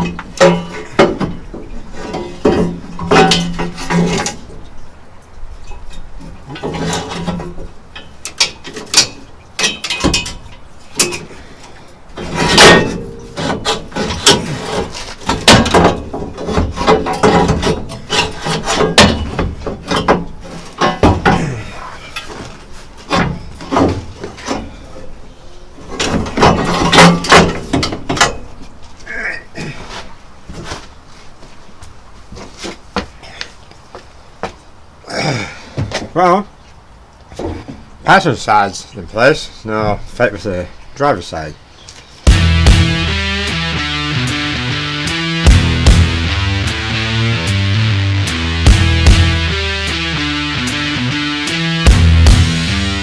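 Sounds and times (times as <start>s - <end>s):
metal clanks and scraping: 0.0s - 29.0s.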